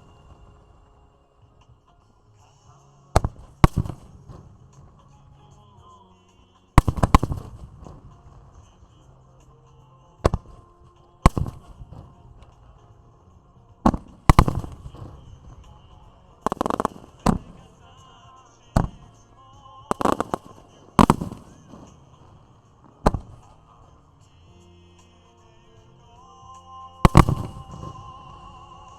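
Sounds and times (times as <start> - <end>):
faint background music: 0.0 - 28.9
fireworks bursting with echoes: 3.1 - 5.9, 6.8 - 24.6, 27.0 - 28.9.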